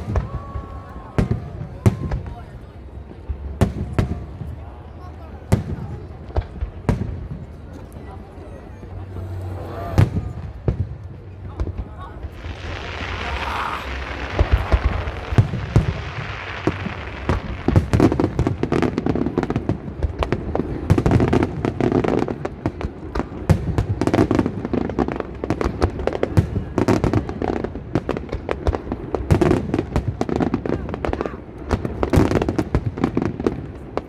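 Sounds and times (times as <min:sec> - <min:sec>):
fireworks bangs and crackles: 0:00.0 - 0:34.0.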